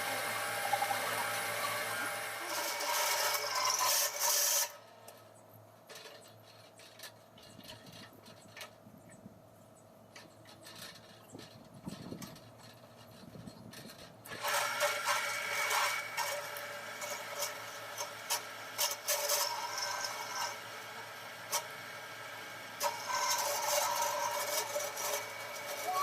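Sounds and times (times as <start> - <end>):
rasping scraping metal: 0.0 - 4.8, 10.2 - 26.0
machine whine: 0.0 - 4.9, 14.3 - 26.0.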